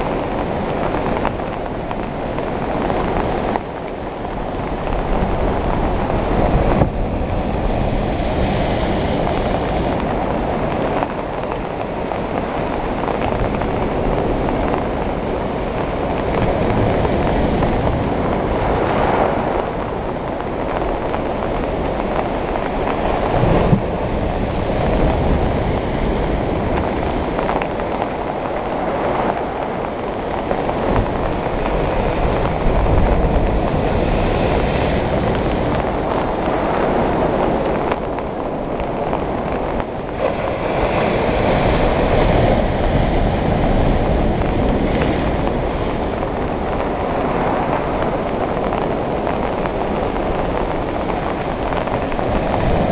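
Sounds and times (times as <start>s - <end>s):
sea waves breaking on beach: 0.0s - 52.9s
wind rumble on microphone: 0.0s - 52.9s.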